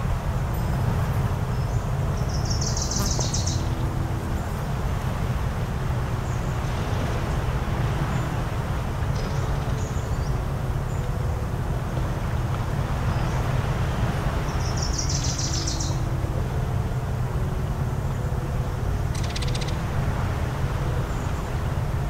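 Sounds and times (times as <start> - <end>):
waves and wind on shore: 0.0 - 22.0
bird rattling trill: 19.1 - 19.8.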